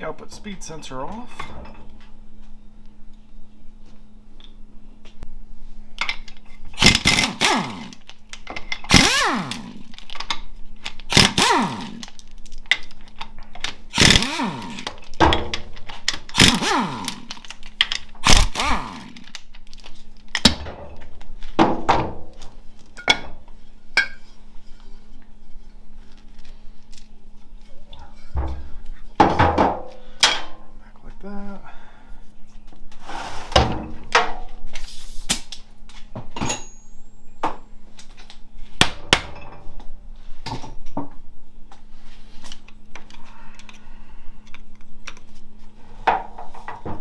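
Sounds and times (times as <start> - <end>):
impact wrench bursts: 6.8 - 8.0, 8.9 - 10.0, 11.1 - 12.2, 13.9 - 15.0, 16.3 - 17.5, 18.2 - 19.3.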